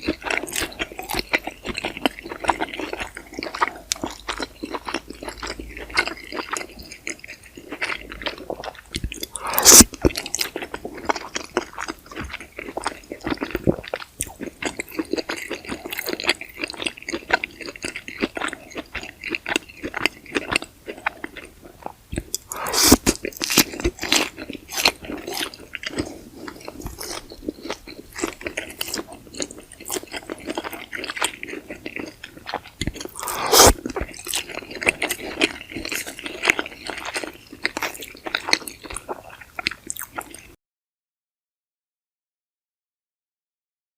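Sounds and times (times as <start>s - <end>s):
wet chewing and mouth clicks: 0.0s - 40.6s
loud bites into food: 9.2s - 10.2s, 22.4s - 23.7s, 32.9s - 34.0s.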